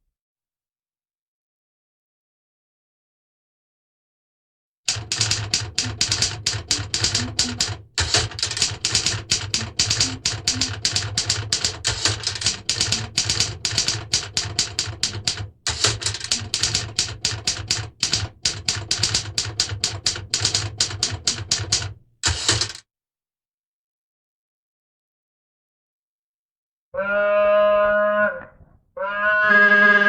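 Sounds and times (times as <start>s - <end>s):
fast typing key clacks: 4.9s - 22.8s.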